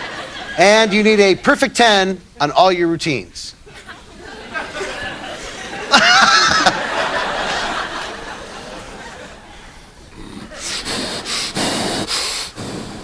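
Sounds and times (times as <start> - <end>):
audience laughing: 0.0 - 1.1, 3.7 - 9.8.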